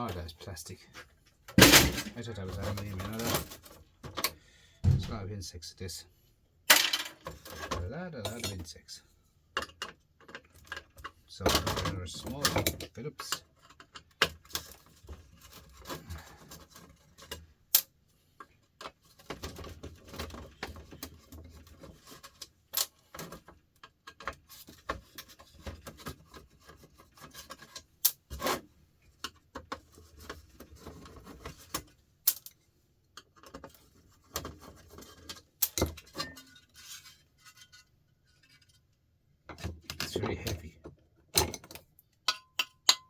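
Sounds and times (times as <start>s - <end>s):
rubbing and scraping: 0.0s - 4.1s, 13.4s - 32.1s, 33.4s - 39.0s
parts clicking and clinking: 1.0s - 5.3s, 6.7s - 8.9s, 9.5s - 43.0s.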